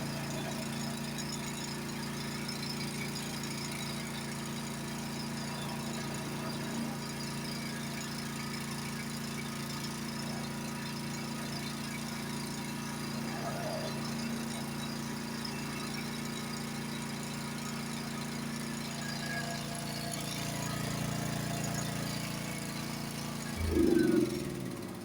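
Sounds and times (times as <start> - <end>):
snowblower engine running: 16.7 - 25.0.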